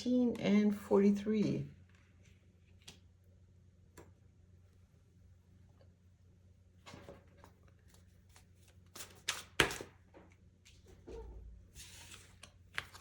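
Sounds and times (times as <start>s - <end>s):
cards shuffling: 11.8s - 13.0s.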